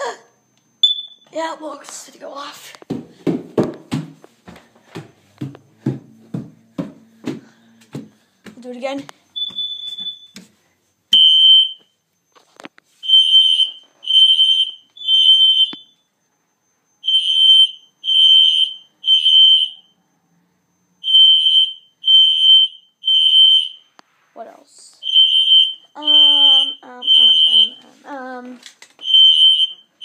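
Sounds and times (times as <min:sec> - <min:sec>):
short steady beep: 0:00.5 - 0:01.4, 0:09.1 - 0:10.4, 0:11.1 - 0:12.4, 0:25.1 - 0:27.8
fire alarm horn pulses: 0:17.0 - 0:20.0.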